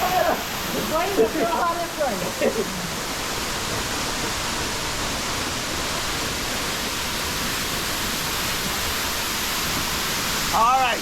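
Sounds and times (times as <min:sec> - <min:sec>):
waterfall rushing into pool: 0:00.0 - 0:11.0.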